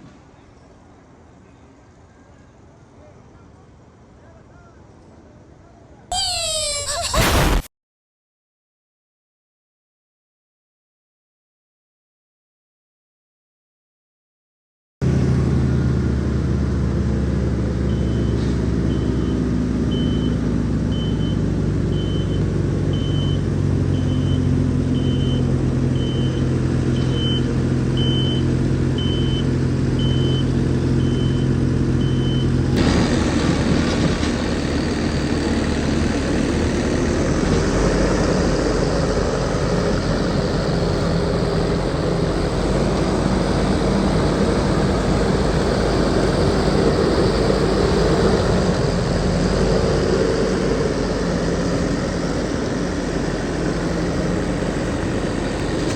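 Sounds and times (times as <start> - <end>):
skid steer engine running: 15.0 - 55.9
reversing alarm beeping: 17.9 - 32.6
rough machinery noise: 29.6 - 55.9.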